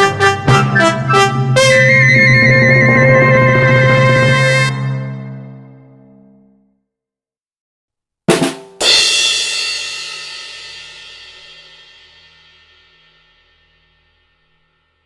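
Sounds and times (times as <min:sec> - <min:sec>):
drum hit: 0:00.0 - 0:04.5.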